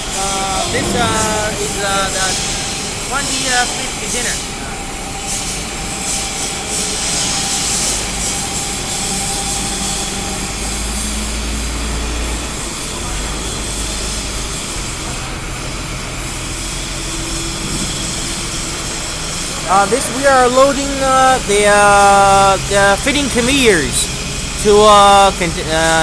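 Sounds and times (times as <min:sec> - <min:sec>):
machinery engine rumbling: 0:00.0 - 0:04.6.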